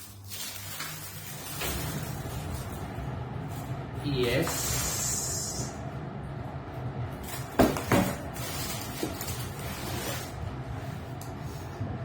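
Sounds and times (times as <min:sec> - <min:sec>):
shoe box packaging rustling: 0:00.0 - 0:02.8, 0:07.2 - 0:10.4
steady low hum: 0:00.0 - 0:12.0.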